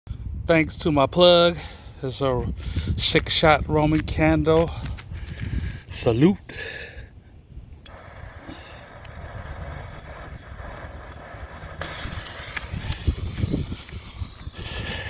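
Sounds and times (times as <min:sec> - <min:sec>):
steady low rumble: 0:07.6 - 0:15.0
firework fuse hissing: 0:07.9 - 0:15.0.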